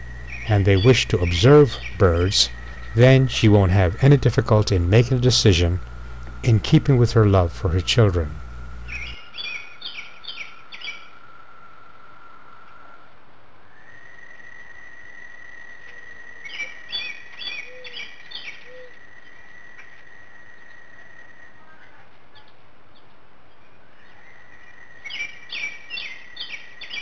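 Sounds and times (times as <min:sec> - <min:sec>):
high-pitched drone: 0:00.0 - 0:09.2
songbird singing: 0:00.0 - 0:11.2, 0:13.8 - 0:27.0.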